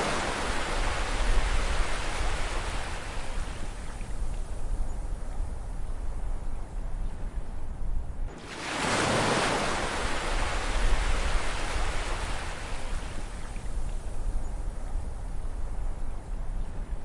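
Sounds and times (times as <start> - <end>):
low rumble of the sea: 0.0 - 17.0
ocean wave breaking: 8.3 - 13.1.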